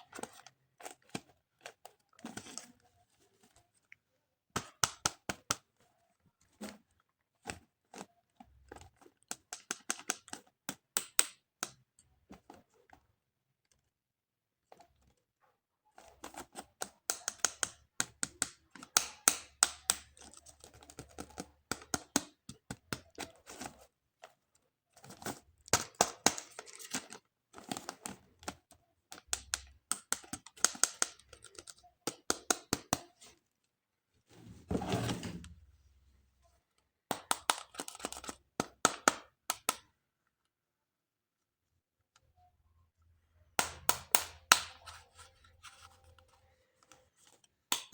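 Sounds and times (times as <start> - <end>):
plastic and cardboard crackling: 0.0 - 3.9.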